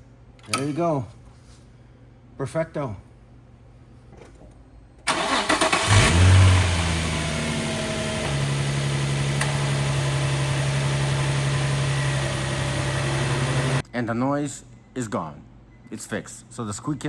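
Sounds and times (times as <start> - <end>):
car engine revving and idling: 5.1 - 13.8
starter motor cranking: 5.1 - 13.8.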